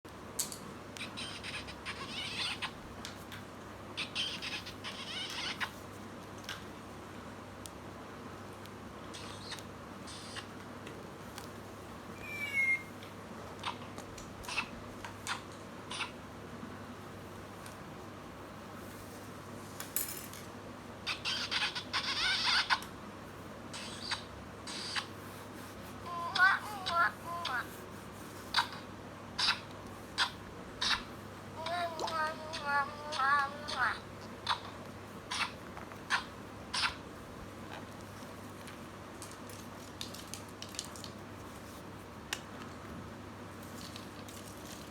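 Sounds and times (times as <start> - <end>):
high warbling chirps from sound book: 12.2 - 12.9.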